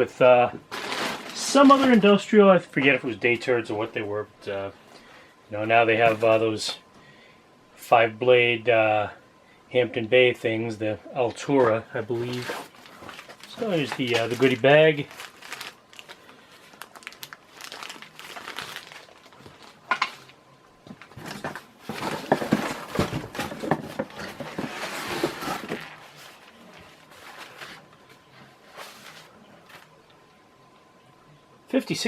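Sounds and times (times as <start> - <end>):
plastic bag crinkling: 0.6 - 2.2, 11.7 - 30.0.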